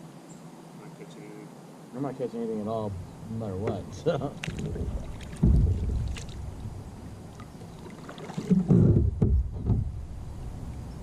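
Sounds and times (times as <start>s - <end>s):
knocks against kayak hull: 4.4s - 6.4s, 8.3s - 10.0s.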